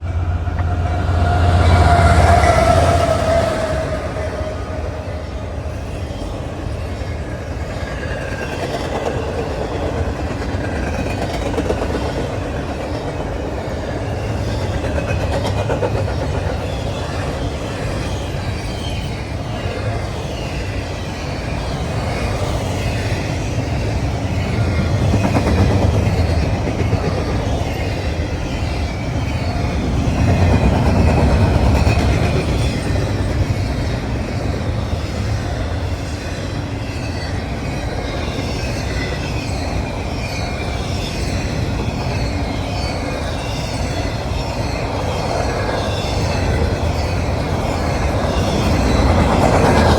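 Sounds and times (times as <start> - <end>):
freight train wheels clattering on rail: 0.0 - 49.9.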